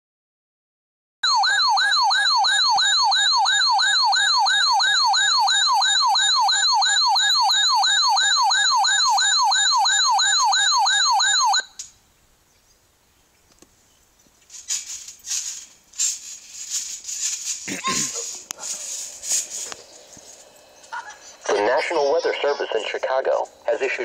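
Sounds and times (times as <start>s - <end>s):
electronic siren alert tone: 1.2s - 11.8s.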